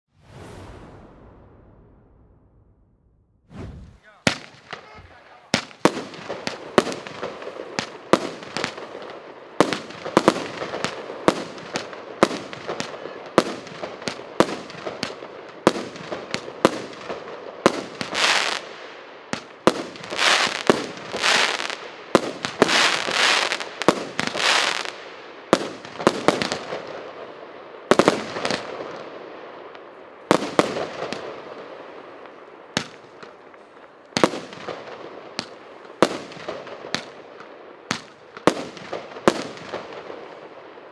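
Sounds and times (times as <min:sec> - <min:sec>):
firework shots banging: 0:03.5 - 0:17.1
hissing crackling firework bursts: 0:17.7 - 0:26.9.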